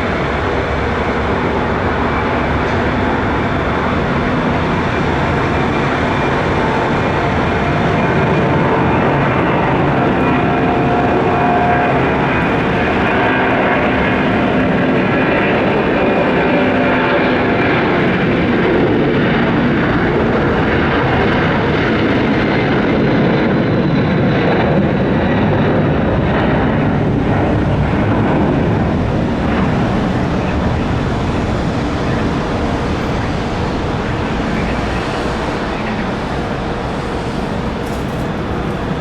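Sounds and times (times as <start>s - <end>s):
jet engines at take-off thrust: 0.0s - 39.0s.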